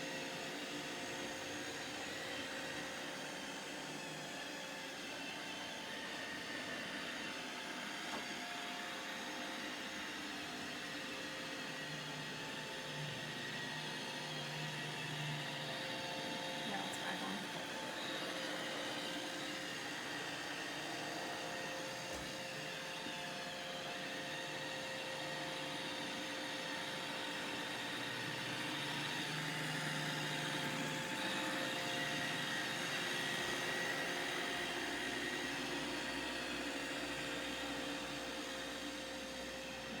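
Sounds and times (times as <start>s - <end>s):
robot vacuum whirring: 0.0s - 40.0s.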